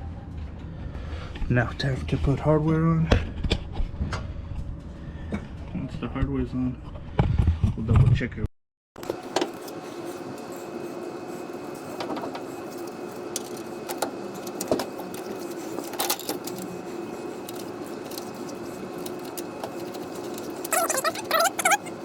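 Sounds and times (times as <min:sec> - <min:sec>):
steady hum: 0:09.0 - 0:22.0
squeaky chirps: 0:20.7 - 0:22.0.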